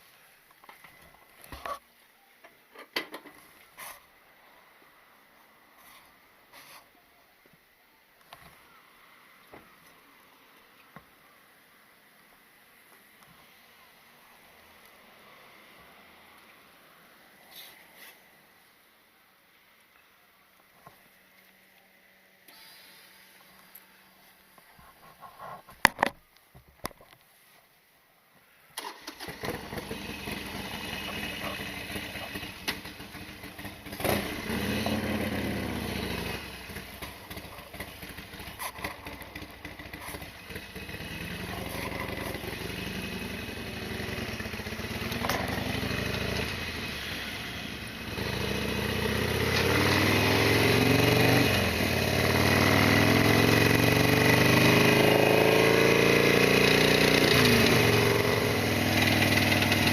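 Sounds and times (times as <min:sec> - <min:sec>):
motorcycle engine revving: 0:28.8 - 0:59.9.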